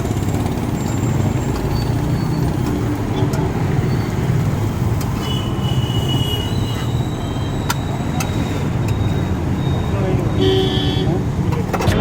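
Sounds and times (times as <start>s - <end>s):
traffic engine rumble: 0.0s - 12.0s
thin high squeal: 6.4s - 8.1s.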